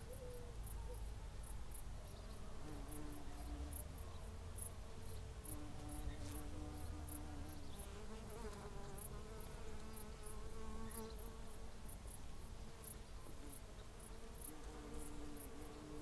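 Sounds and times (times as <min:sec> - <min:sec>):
flying insects buzzing: 0:04.6 - 0:16.0.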